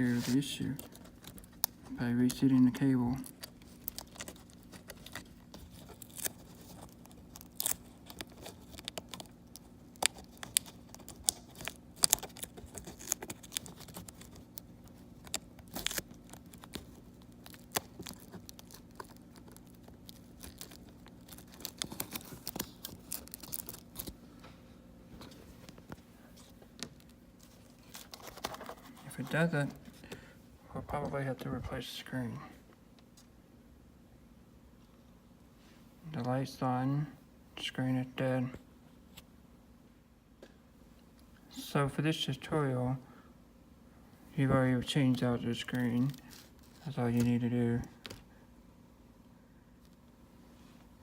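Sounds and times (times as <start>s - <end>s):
faint low hum: 0.0s - 51.0s
clicks taps and crinkling: 0.3s - 31.2s, 44.6s - 48.3s.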